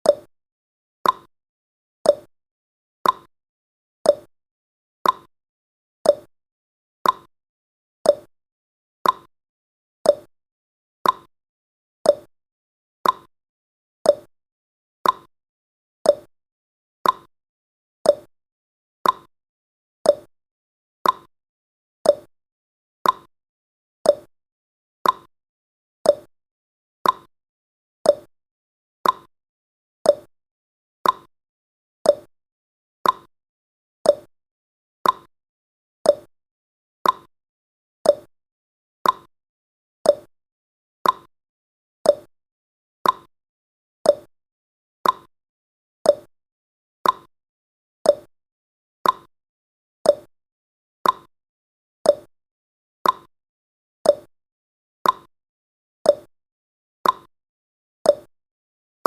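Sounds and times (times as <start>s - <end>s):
timer ticks with brief ring: 39.0s - 39.3s, 41.0s - 41.3s, 43.0s - 43.3s, 45.0s - 45.3s, 47.0s - 47.3s, 48.1s - 48.3s, 49.0s - 49.3s, 50.1s - 50.3s, 51.0s - 51.3s, 52.1s - 52.3s, 53.0s - 53.3s, 54.1s - 54.3s, 55.0s - 55.3s, 57.0s - 57.3s.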